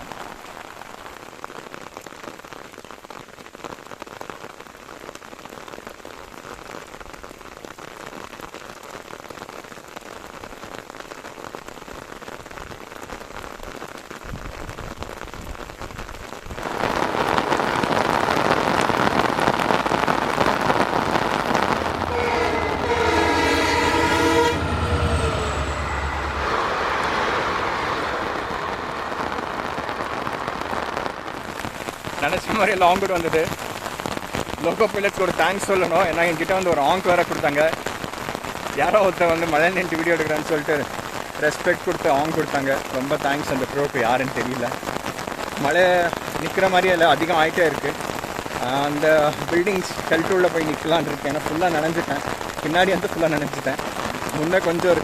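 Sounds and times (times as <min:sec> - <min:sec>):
heavy rain falling: 0:00.0 - 0:55.0
train passing loudly: 0:20.5 - 0:31.5
locomotive horn: 0:21.1 - 0:30.9
deep engine drone: 0:21.4 - 0:30.6.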